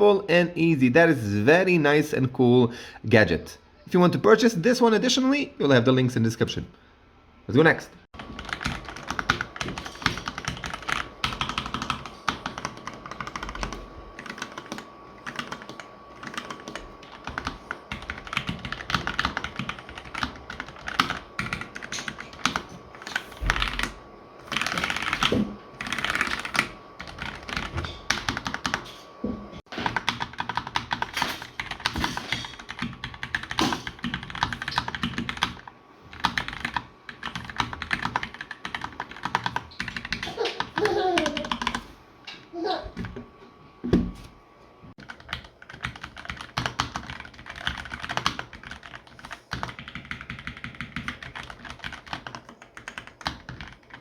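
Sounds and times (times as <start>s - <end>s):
fast typing on mechanical keyboard: 8.2s - 28.8s, 29.7s - 41.9s, 45.0s - 54.0s.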